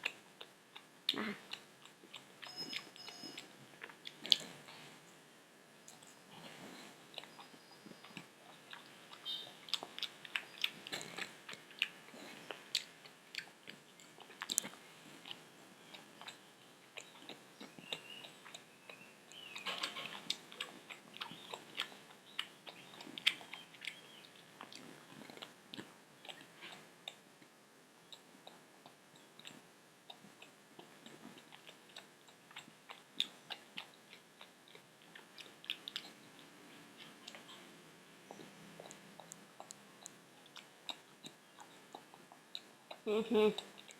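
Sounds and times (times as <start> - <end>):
chewing and biting pizza: 6.7 - 27.2.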